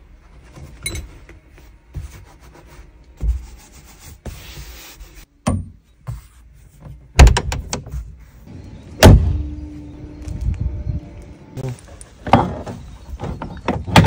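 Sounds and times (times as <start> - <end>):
car door shutting: 8.9 - 9.6.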